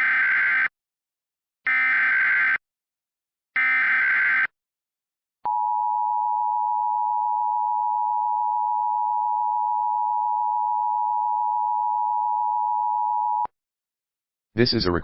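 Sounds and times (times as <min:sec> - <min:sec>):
two-tone alarm tone: 0:01.7 - 0:02.6, 0:03.6 - 0:04.5, 0:05.5 - 0:13.5.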